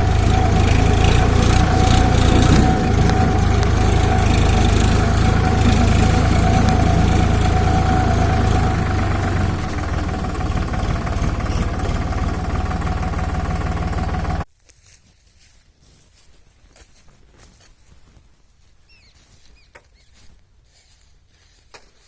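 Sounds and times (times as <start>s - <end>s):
engine rumbling with whine: 0.0s - 14.5s.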